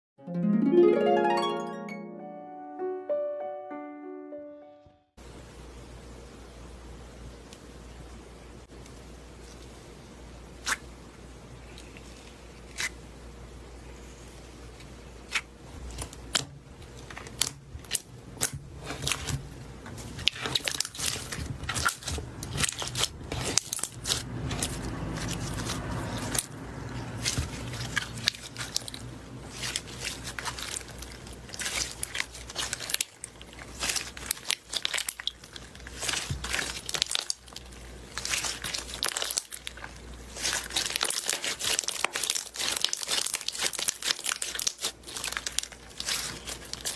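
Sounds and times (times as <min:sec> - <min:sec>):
slime popping and crackling: 0:20.2 - 0:26.5, 0:27.2 - 0:46.9.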